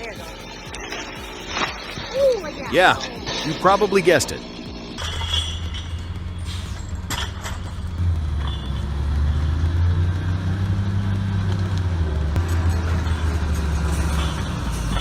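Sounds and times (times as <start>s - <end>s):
heavy vehicle engine droning: 0.0s - 15.0s.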